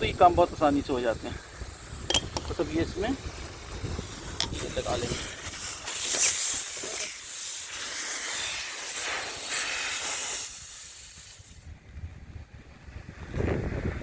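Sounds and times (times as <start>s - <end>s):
air hissing from tyre: 0.0s - 11.8s.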